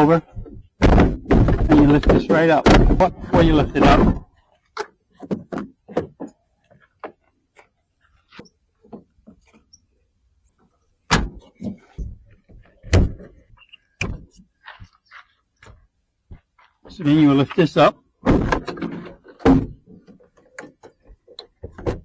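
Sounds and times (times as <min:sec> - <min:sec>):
loud thuds: 0:00.0 - 0:04.2, 0:18.3 - 0:18.7
clicks and knocks on plastic trim: 0:00.4 - 0:04.2.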